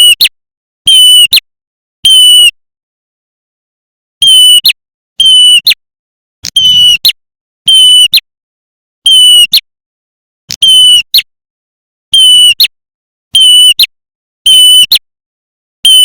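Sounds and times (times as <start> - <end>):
buzzy bird call with sharp chip: 6.5 - 7.1.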